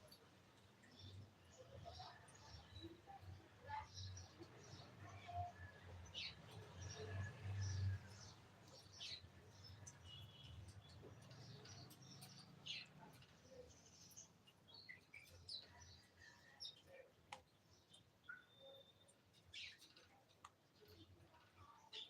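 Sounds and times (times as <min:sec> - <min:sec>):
soft clicks: 0:17.3 - 0:17.5.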